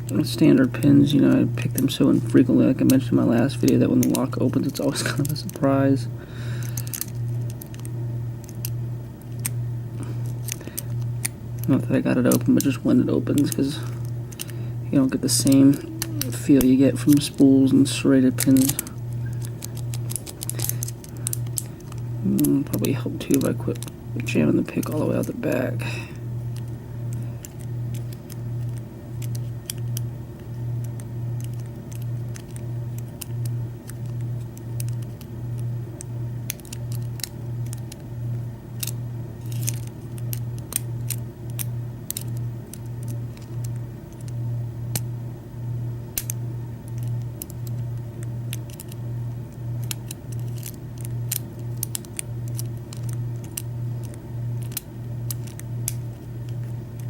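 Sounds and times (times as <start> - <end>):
pulsing low hum: 0.0 - 57.0
lock pick clicking and scraping: 6.6 - 9.6, 10.2 - 11.7, 18.4 - 22.6, 48.5 - 49.0, 49.8 - 57.0.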